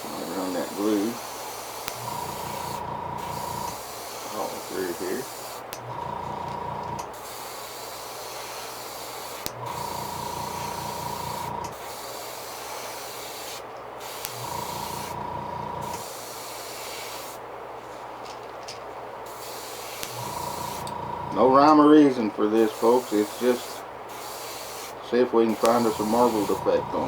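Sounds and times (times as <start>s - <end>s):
airbrush hissing: 0.0s - 17.5s, 19.2s - 27.0s
low hum: 2.0s - 3.7s, 20.1s - 21.6s.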